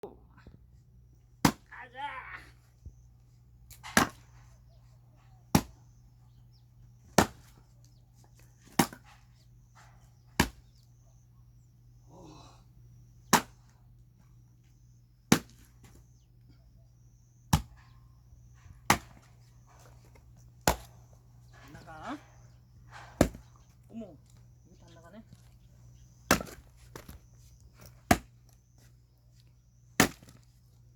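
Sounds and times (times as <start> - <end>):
axe splitting firewood: 1.4 - 1.8, 3.7 - 4.4, 7.2 - 7.6, 8.6 - 10.6, 13.3 - 13.7, 15.3 - 16.0, 17.5 - 17.8, 18.6 - 24.4, 26.2 - 28.9, 29.9 - 30.6.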